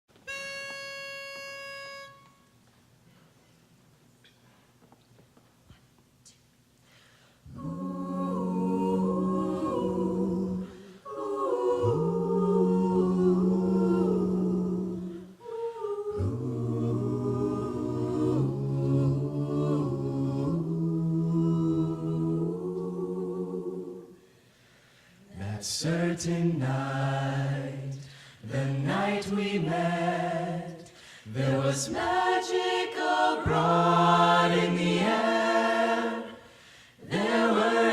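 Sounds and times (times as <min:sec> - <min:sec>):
a cappella group singing harmony: 0:07.4 - 0:37.9.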